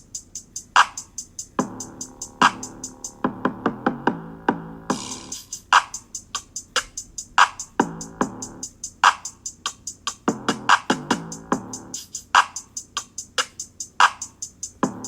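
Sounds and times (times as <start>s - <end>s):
drum-machine hi-hats: 0.0s - 15.0s
electronic hip-hop beat: 0.0s - 15.0s
snare hits: 0.8s - 1.2s, 2.4s - 2.8s, 4.9s - 6.1s
synth bass line: 1.6s - 5.4s, 7.7s - 8.7s.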